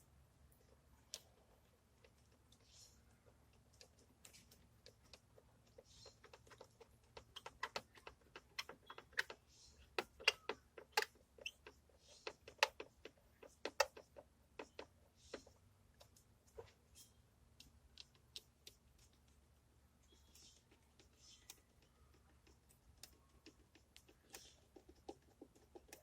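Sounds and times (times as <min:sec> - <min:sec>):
hand tools clicking and tapping: 0:03.5 - 0:16.2, 0:20.3 - 0:26.0.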